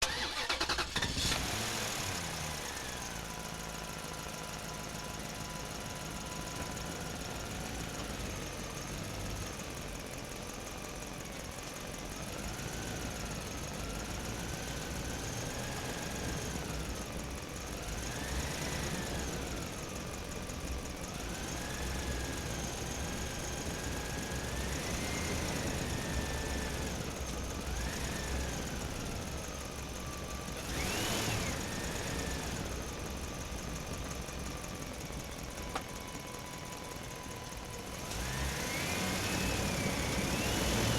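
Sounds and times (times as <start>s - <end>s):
truck engine revving: 0.0s - 3.1s, 21.1s - 29.5s, 30.6s - 34.0s, 38.0s - 40.9s.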